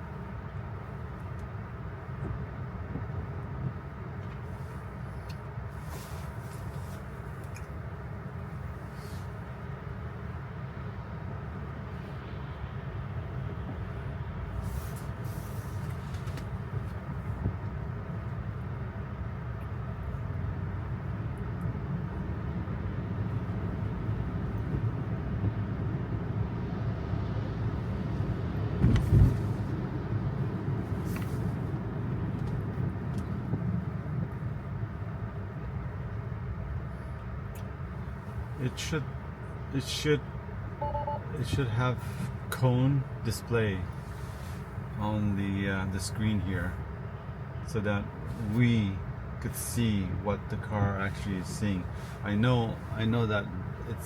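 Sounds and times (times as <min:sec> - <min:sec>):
road and tyre rumble: 0:00.0 - 0:54.0
thump: 0:28.8 - 0:29.4.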